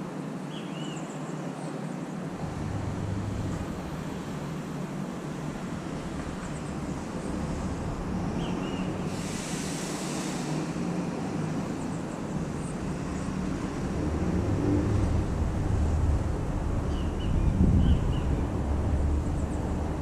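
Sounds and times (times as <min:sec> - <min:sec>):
steady low rumble: 0:02.3 - 0:09.6, 0:11.4 - 0:20.0
hiss: 0:06.7 - 0:14.1.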